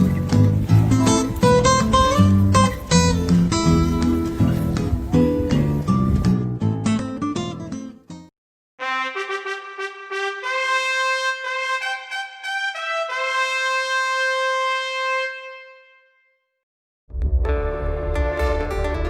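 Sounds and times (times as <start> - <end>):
strummed acoustic guitar music: 0.0 - 8.3
solo brass instrument playing: 8.8 - 16.5.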